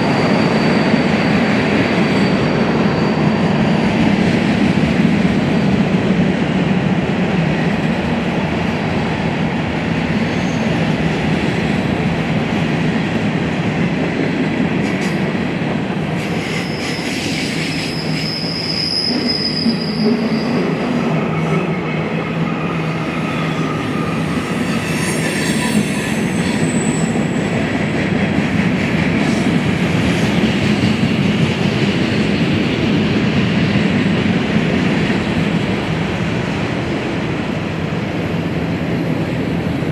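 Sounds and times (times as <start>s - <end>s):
high-pitched wheel squeals: 0.0s - 4.0s, 16.2s - 21.7s, 22.6s - 27.5s
freight train wheels rumbling: 0.0s - 39.9s.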